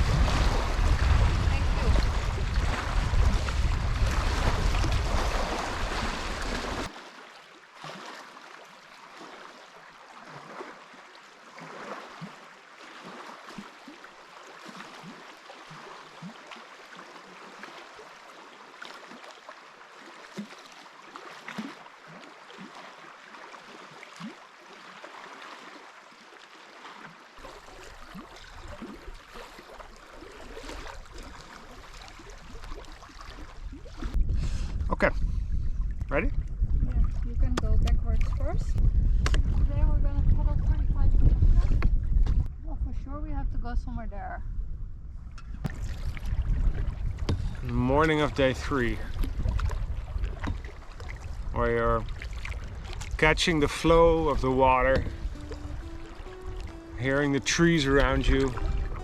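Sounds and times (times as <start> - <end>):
wind rumbling on microphone: 0.0 - 6.9, 27.4 - 59.0
water splashes and drips: 0.0 - 34.2, 45.4 - 59.0.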